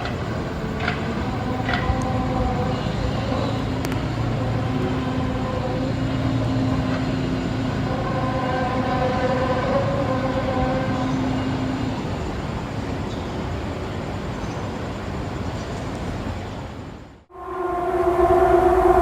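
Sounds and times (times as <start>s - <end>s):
low rumbling drone: 17.3s - 19.0s.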